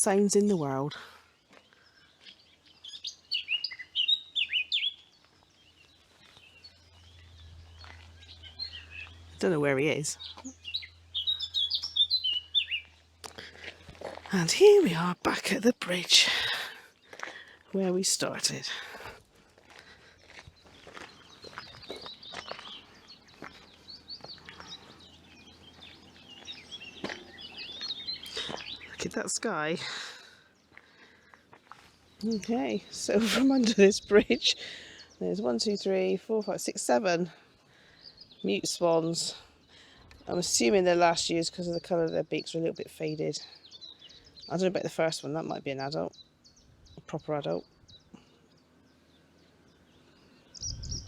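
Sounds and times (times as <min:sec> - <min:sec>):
small birds chirping: 0:00.0 - 0:51.0
songbird singing sharp notes: 0:01.6 - 0:13.5, 0:21.0 - 0:29.7, 0:40.2 - 0:51.0.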